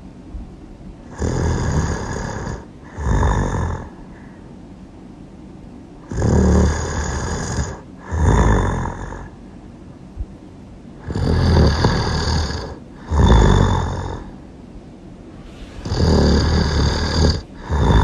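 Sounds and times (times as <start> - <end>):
loud snoring: 1.1 - 3.9, 6.0 - 9.3, 11.0 - 14.3, 15.4 - 18.0.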